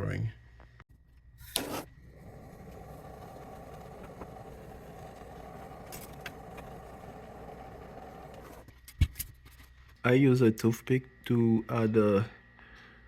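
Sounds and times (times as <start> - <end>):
torch hiss: 1.5 - 8.6
torch flame roaring: 1.5 - 8.7.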